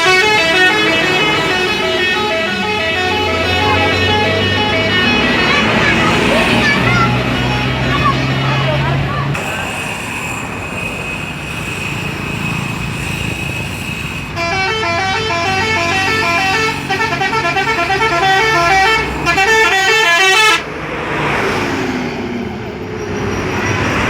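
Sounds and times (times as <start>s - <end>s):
musical multi-tone air horn: 0.0s - 8.4s, 14.3s - 20.7s
road traffic noise: 0.0s - 24.0s.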